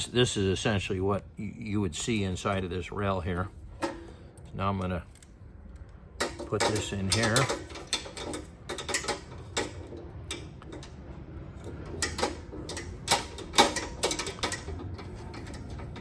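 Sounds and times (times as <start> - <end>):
metal bolt clicks and knocks: 6.2 - 16.0.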